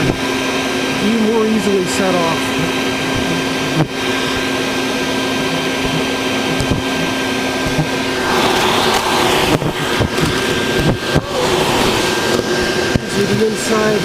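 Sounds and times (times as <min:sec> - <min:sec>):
vacuum cleaner running: 0:00.0 - 0:14.0
rough rushing hiss: 0:08.1 - 0:12.8.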